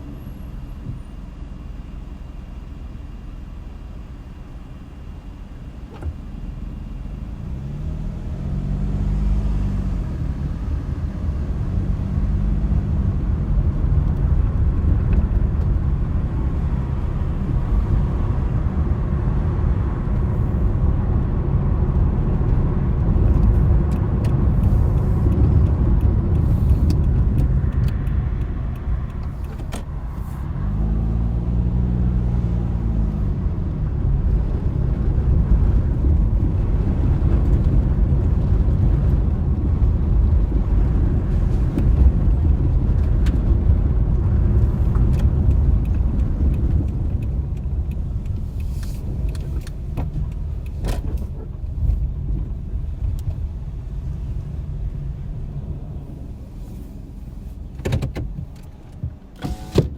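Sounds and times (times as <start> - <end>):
road and wind noise: 0.0 - 59.9
car engine revving: 6.1 - 51.4.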